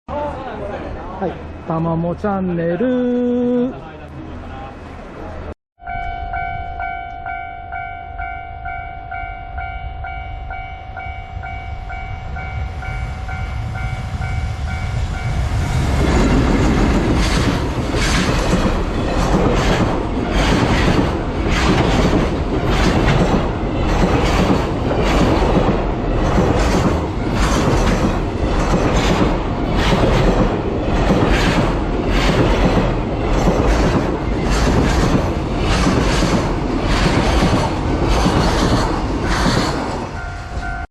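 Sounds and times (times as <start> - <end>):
level crossing warning bell: 5.8 - 15.6, 40.1 - 40.9
train wheels clacking over rail joints: 16.0 - 40.1.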